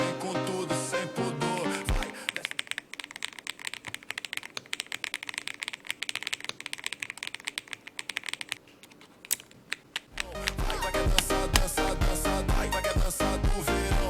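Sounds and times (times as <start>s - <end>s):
fast keyboard typing: 1.5s - 11.8s.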